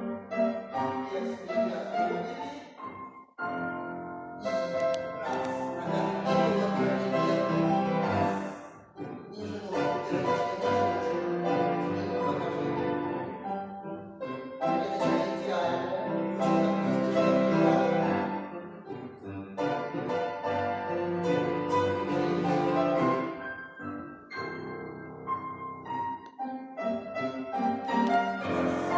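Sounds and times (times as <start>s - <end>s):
classical piano music: 0.0s - 28.9s.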